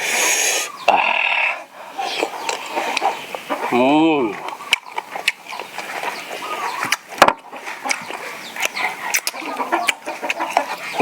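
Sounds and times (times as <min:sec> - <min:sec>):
chickens clucking: 0:00.0 - 0:11.0.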